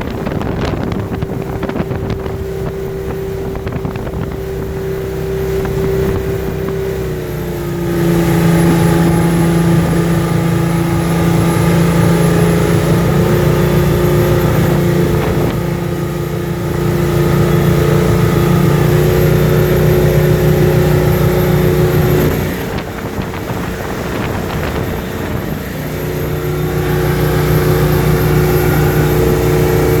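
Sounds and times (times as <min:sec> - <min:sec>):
boat diesel engine running: 0:00.0 - 0:30.0
high turbo whistle: 0:06.1 - 0:30.0.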